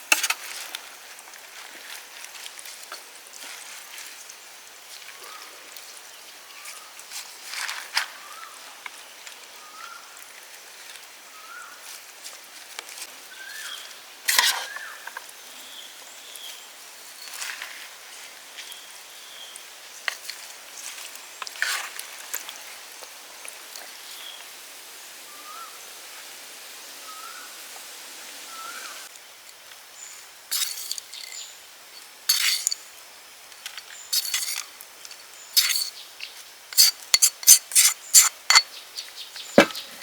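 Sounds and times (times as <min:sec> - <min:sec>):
outdoor hiss: 0:00.0 - 0:40.0
bird chirping: 0:38.1 - 0:40.0
sharp clicks and knocks: 0:39.6 - 0:40.0.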